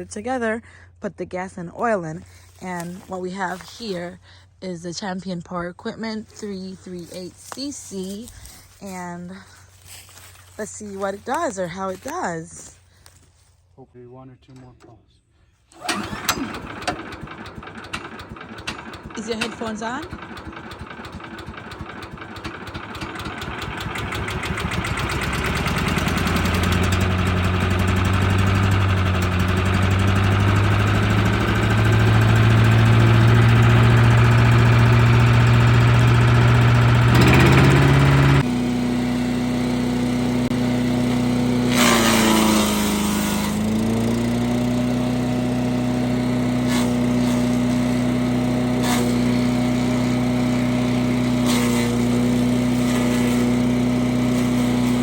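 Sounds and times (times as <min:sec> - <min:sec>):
wood chipper engine running: 0:01.9 - 0:04.6, 0:06.0 - 0:13.6, 0:15.7 - 0:55.0
brush being shredded: 0:06.3 - 0:13.6.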